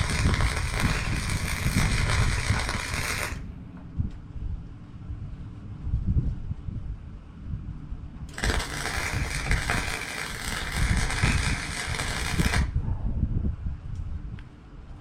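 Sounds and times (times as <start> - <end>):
electric welding arc crackling: 0.0 - 3.4, 8.3 - 12.8.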